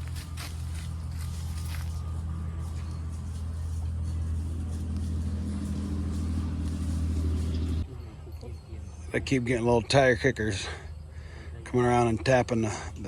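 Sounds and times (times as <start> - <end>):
engine running: 0.0 - 9.2.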